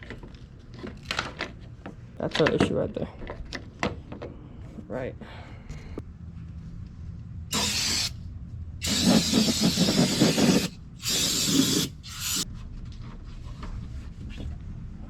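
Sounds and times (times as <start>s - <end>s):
aerosol spray can hissing: 7.5s - 8.1s, 8.8s - 12.4s.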